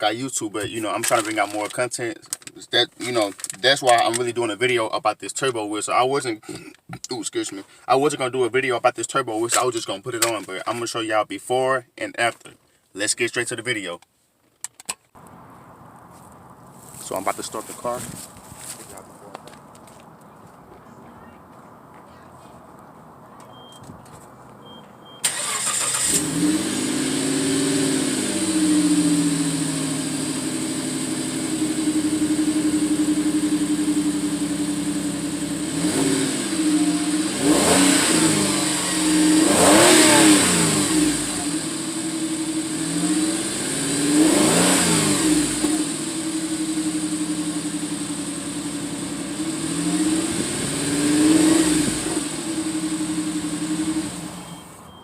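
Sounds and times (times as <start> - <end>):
car engine idling and revving: 15.2 - 20.9, 22.7 - 55.0.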